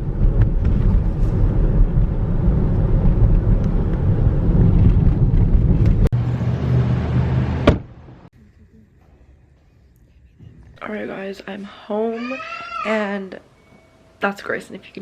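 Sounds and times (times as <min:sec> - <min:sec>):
car cabin road and engine noise: 0:00.0 - 0:08.3.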